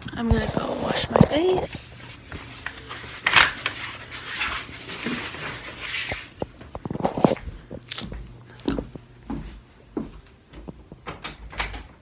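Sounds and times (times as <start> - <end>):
rustling: 0.8 - 7.4.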